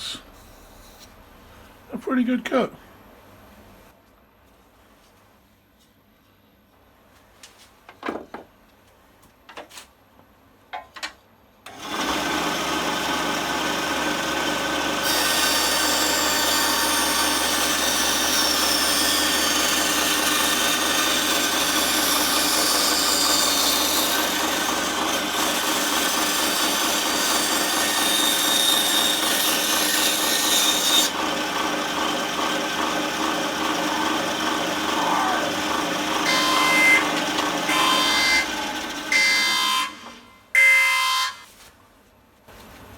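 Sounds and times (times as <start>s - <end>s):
bandsaw cutting wood: 11.7s - 40.2s
bandsaw humming and whining: 11.7s - 40.2s.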